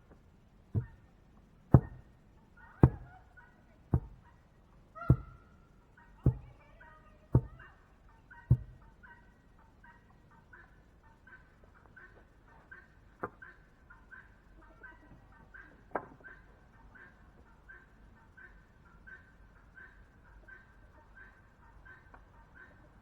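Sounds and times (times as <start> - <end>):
tool pounding heavy strikes: 1.7 - 2.1, 6.3 - 6.5.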